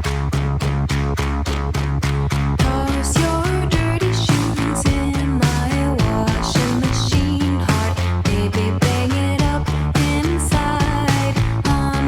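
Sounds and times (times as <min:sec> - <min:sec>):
pop-rock music: 0:02.6 - 0:12.0.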